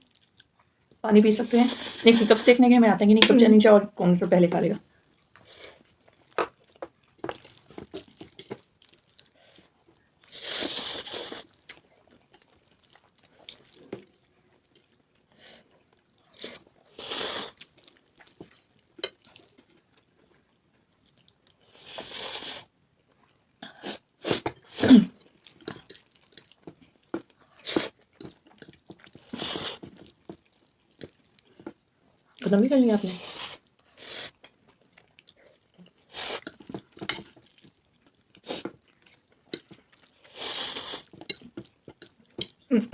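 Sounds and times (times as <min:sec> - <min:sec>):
chewing with small clicks: 0:00.0 - 0:01.0, 0:04.8 - 0:10.4, 0:11.3 - 0:16.9, 0:17.5 - 0:21.6, 0:25.2 - 0:32.5, 0:33.6 - 0:42.7
hissy noodle slurps: 0:10.2 - 0:11.5, 0:16.3 - 0:17.6, 0:21.6 - 0:22.7, 0:27.5 - 0:28.0, 0:29.1 - 0:30.0, 0:33.1 - 0:34.4, 0:36.0 - 0:36.7, 0:40.0 - 0:41.4.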